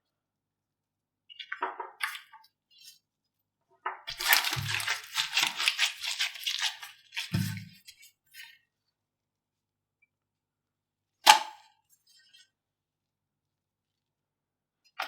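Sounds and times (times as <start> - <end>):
slime squelches: 4.0 - 8.2
slime crackling and popping: 4.1 - 7.4.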